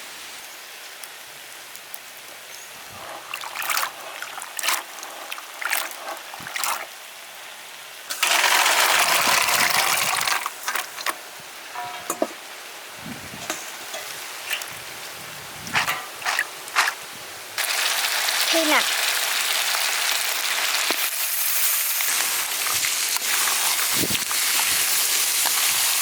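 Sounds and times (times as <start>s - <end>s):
stir-fry sizzling in hot oil: 2.4s - 26.0s
utensil scraping a pan: 11.8s - 12.4s, 15.7s - 17.0s.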